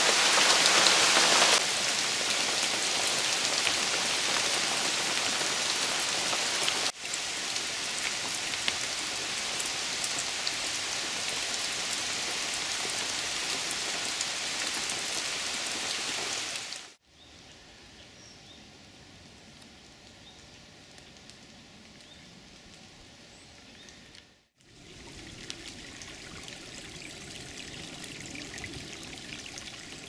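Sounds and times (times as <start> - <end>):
steady rain falling: 0.0 - 17.0, 23.8 - 30.0.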